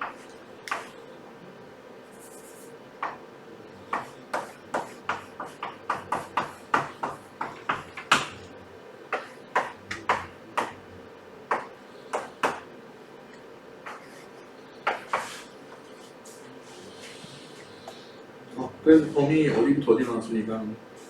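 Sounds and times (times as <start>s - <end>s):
pen tapping on paper: 4.0s - 8.4s, 9.1s - 10.8s.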